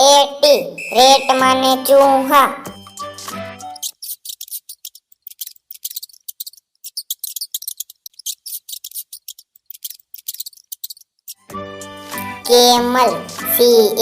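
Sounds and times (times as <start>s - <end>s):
rat clicking and chirping: 2.8s - 11.6s.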